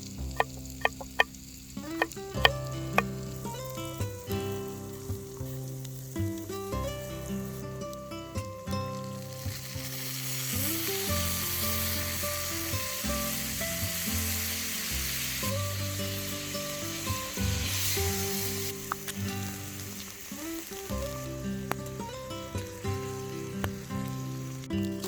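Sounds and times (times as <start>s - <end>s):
background music: 0.0s - 25.0s
food sizzling in a pan: 0.0s - 25.0s.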